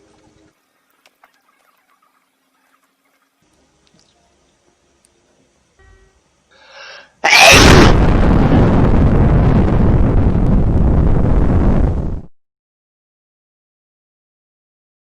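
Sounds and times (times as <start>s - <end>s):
loud distorted blast: 7.3s - 12.3s.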